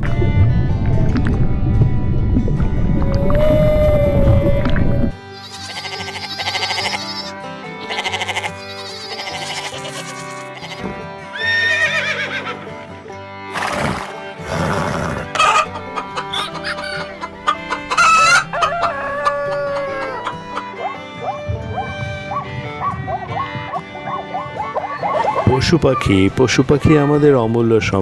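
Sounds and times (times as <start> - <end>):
background music: 0.0 - 28.0
farm animal calls: 5.2 - 12.7, 14.0 - 27.7.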